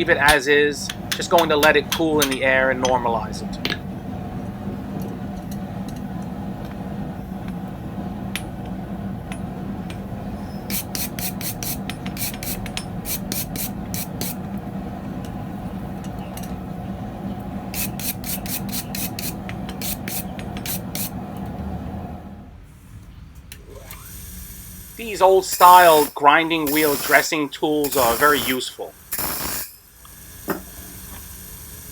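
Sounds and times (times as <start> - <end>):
dressing tool rasping clatter: 0.0 - 4.0, 9.3 - 14.5, 17.7 - 21.6, 25.2 - 28.6
grinding wheel running: 0.0 - 22.5, 23.6 - 31.9.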